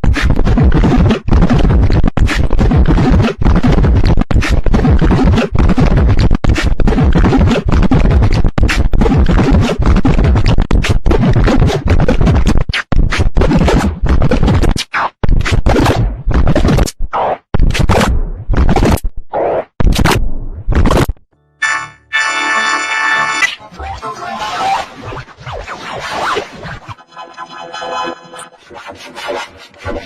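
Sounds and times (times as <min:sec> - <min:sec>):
stuttering chopped remix audio: 0:00.0 - 0:21.2, 0:23.3 - 0:30.0.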